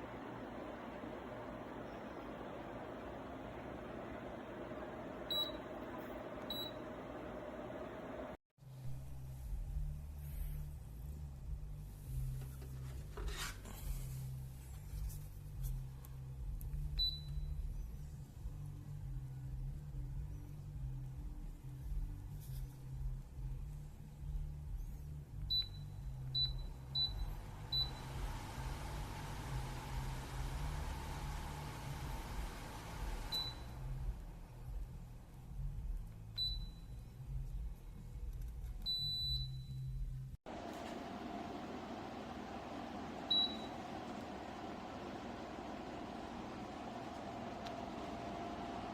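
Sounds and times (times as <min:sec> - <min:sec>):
fan airflow buffeting microphone: 0:00.0 - 0:08.4, 0:26.9 - 0:36.1, 0:40.5 - 0:48.9
steady hum: 0:00.0 - 0:37.8, 0:40.5 - 0:48.9.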